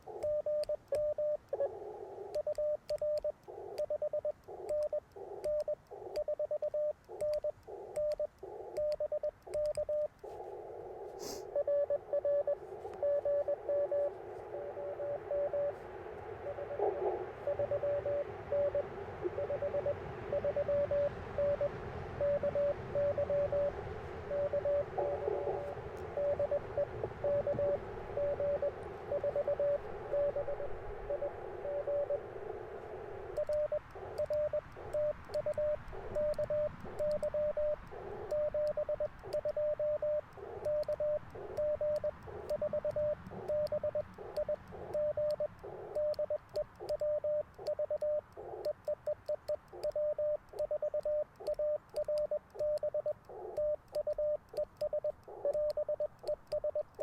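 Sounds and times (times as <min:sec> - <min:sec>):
morse code beeps: 0:00.0 - 0:01.7, 0:02.3 - 0:10.2, 0:11.5 - 0:15.8, 0:16.4 - 0:32.3, 0:33.2 - 0:57.0
radio band hiss: 0:10.1 - 0:21.0, 0:21.7 - 0:46.1.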